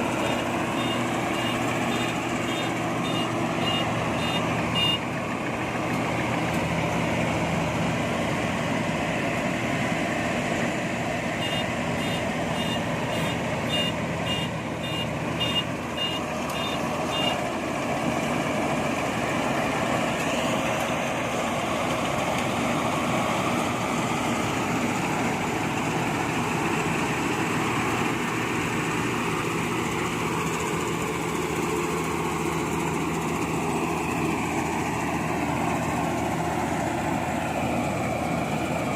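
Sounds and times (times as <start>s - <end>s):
diesel engine running: 0.0s - 38.9s
short high warning beeps: 0.2s - 5.0s, 11.4s - 17.4s.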